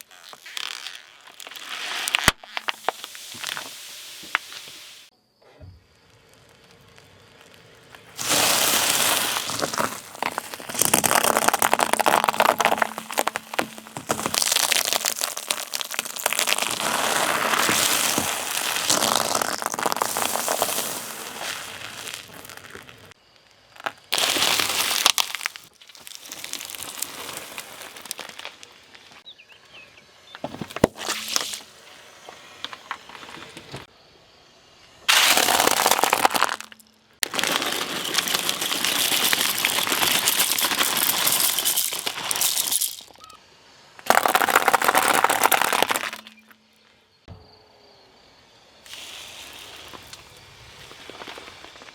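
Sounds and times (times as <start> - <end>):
objects crunching under a tyre: 0.0 - 5.1, 6.0 - 33.9, 35.1 - 43.4, 44.0 - 46.9, 48.9 - 51.9
sharp cracks: 7.0 - 23.2, 35.1 - 43.2.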